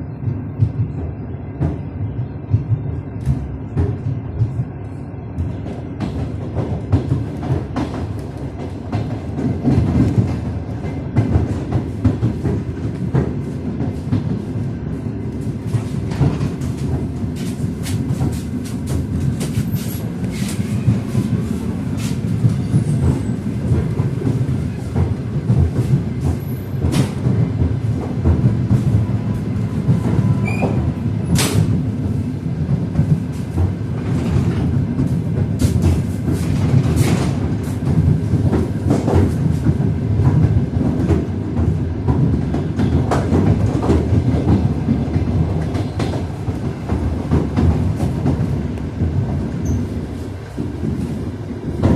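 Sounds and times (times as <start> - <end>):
train wheels clattering over rail joints: 15.4 - 51.9.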